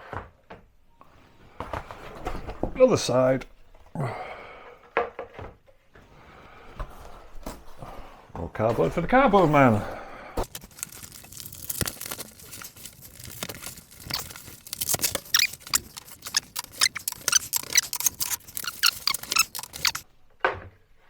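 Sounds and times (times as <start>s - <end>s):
packaging scraping and squeaking: 6.2s - 20.0s.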